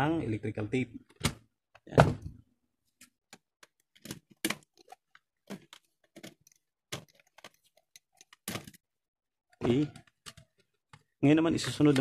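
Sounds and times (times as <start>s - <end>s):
hands handling wires and tape: 2.8s - 12.0s.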